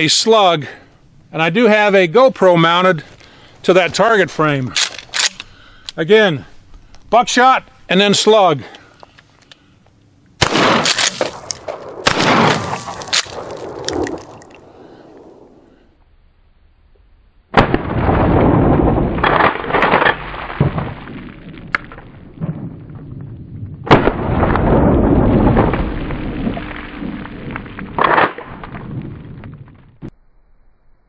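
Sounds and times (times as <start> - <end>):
shotgun firing: 10.4 - 14.2, 17.5 - 18.5, 23.9 - 24.8.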